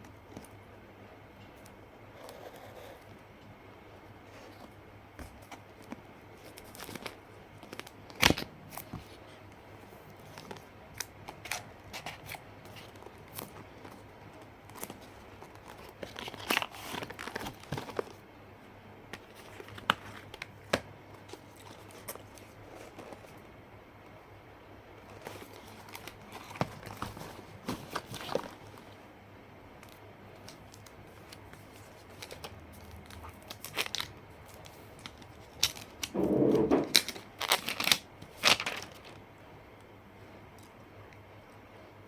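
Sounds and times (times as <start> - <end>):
packaging tearing and crinkling: 14.7 - 18.2, 31.8 - 39.2.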